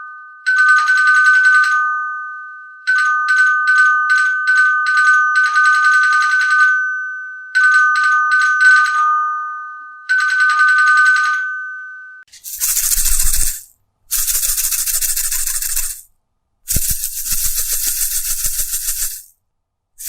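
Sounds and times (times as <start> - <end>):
metal bell rung rapidly: 12.4 - 16.1, 16.7 - 19.3.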